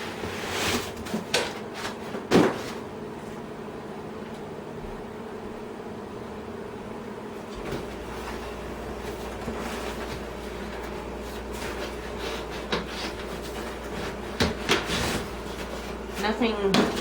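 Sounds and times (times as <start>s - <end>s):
rubbing and rustling packing: 9.0s - 17.0s.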